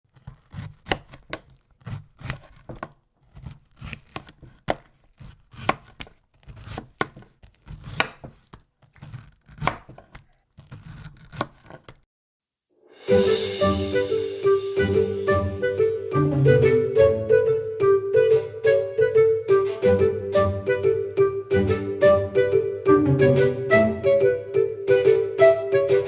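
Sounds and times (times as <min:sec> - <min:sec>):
knife chopping on cutting board: 0:00.2 - 0:12.0.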